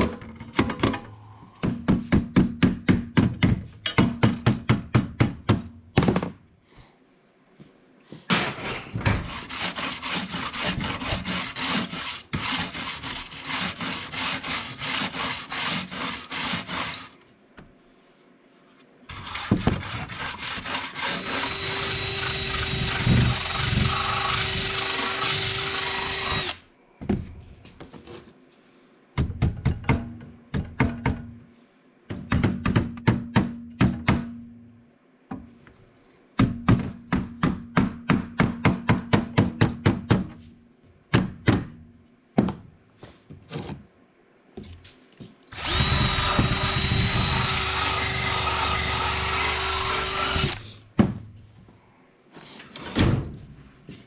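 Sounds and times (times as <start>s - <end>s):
handheld power tool running: 21.0s - 26.6s, 45.6s - 50.6s.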